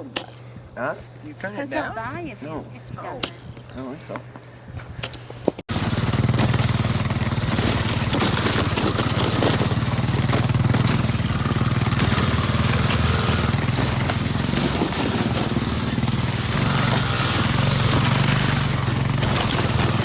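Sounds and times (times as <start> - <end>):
motorcycle engine running: 5.7 - 20.0.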